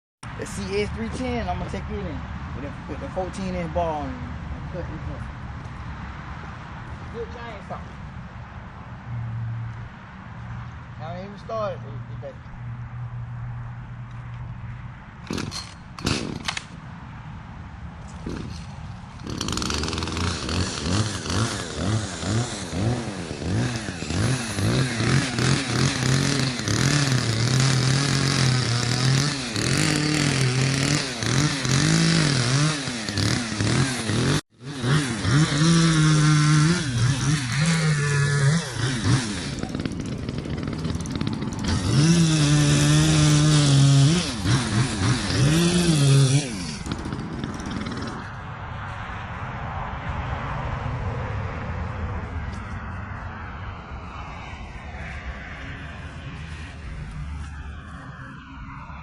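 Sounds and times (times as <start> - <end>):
chainsaw revving and cutting wood: 0.4 - 2.2, 15.3 - 16.6, 18.1 - 48.4
chainsaw pull cord tugs: 15.2 - 16.6, 18.1 - 48.3.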